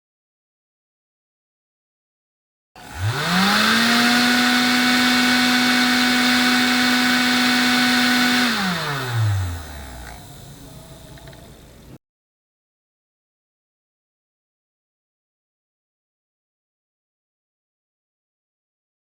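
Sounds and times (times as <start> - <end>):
electric fan humming: 2.8 - 12.0.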